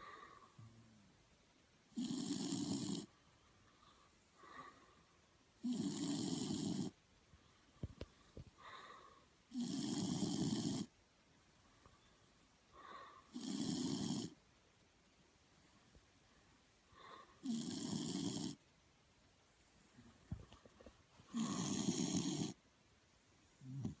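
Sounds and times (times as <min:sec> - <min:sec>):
dog snoring: 0:01.9 - 0:03.1, 0:05.6 - 0:07.0, 0:08.6 - 0:10.9, 0:12.8 - 0:14.4, 0:17.0 - 0:18.6, 0:21.3 - 0:22.6, 0:23.6 - 0:24.0
soft dog breaths: 0:02.3 - 0:10.8, 0:19.5 - 0:22.6.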